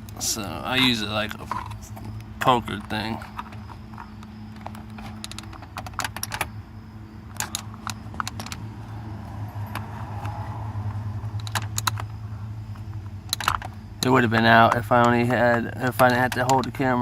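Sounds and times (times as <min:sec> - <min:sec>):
steady low hum: 0:00.0 - 0:17.0
plastic and metal clicks and scrapes: 0:07.3 - 0:08.6.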